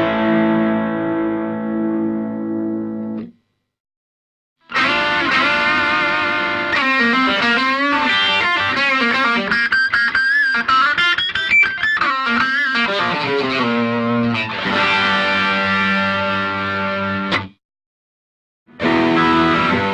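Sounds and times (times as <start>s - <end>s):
overdriven electric guitar: 0.0s - 3.4s, 4.6s - 17.6s, 18.7s - 19.9s.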